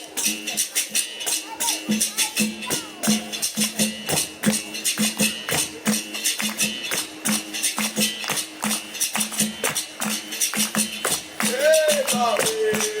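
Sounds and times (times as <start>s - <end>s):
tambourine jingles: 0.0s - 13.0s
sharp drum strikes: 1.4s - 8.8s.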